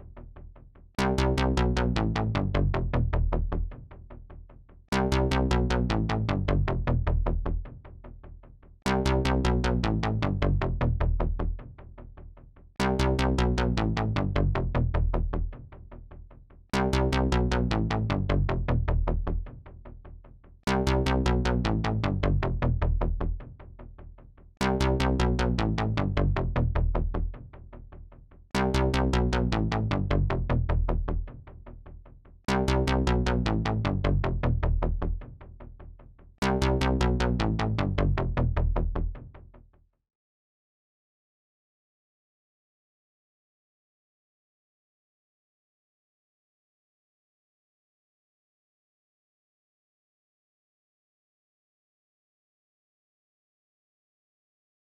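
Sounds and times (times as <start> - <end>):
deep synth bass: 1.0 - 4.2, 4.9 - 8.1, 8.9 - 12.0, 12.8 - 16.0, 16.8 - 19.9, 20.7 - 23.9, 24.6 - 27.8, 28.5 - 31.8, 32.5 - 39.4.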